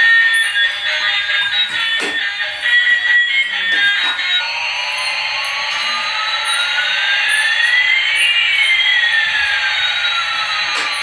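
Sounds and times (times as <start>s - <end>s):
toy jet engine sound effect: 0.0s - 11.0s.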